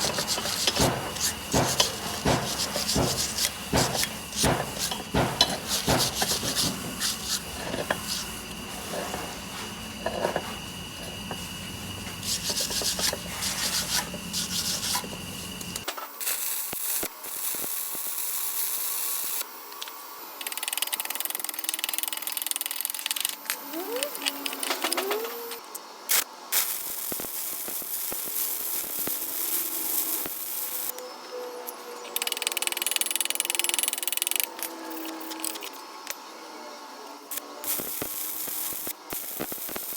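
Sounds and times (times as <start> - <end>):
hand tool scraping metal: 0.0 - 9.2, 12.2 - 15.2.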